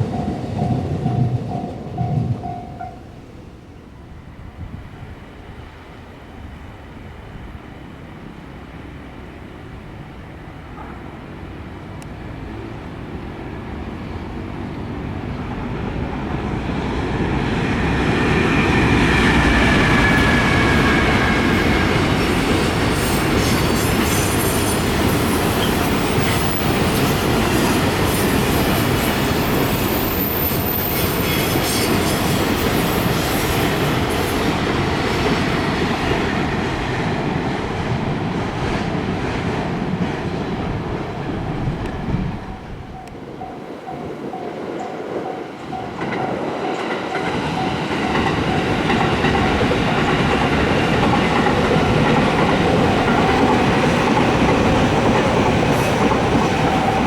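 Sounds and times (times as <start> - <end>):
wheels clickety-clack on rails: 0.0 - 3.1, 10.6 - 57.0
train passing: 0.0 - 57.0.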